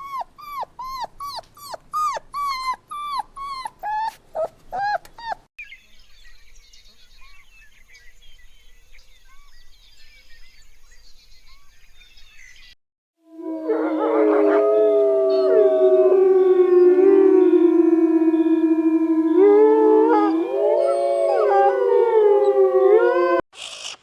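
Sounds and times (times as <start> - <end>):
puppy whimpering and yelping: 0.0 - 5.5.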